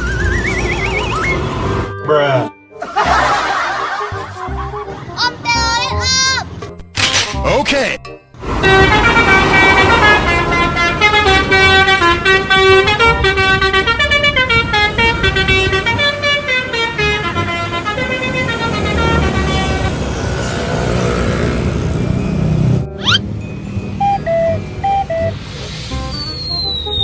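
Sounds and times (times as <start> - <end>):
bus engine running: 0.0 - 1.9, 8.4 - 27.0
road noise: 0.0 - 2.0, 8.4 - 27.0
multi-tone bus horn tune: 8.4 - 20.1.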